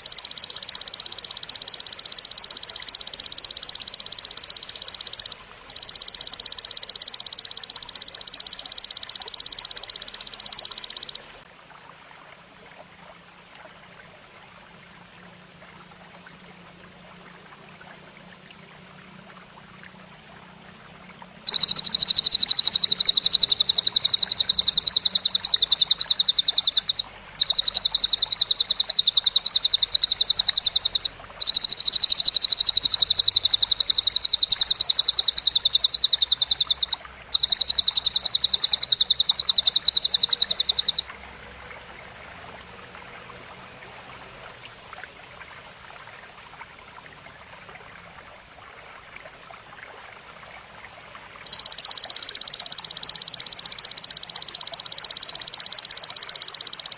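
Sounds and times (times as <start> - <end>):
grasshopper stridulation buzz: 21.5 - 41.0.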